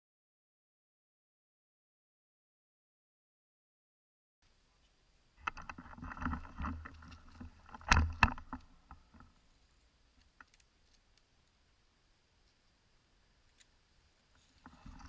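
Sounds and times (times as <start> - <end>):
microphone handling rustling: 5.4 - 9.2.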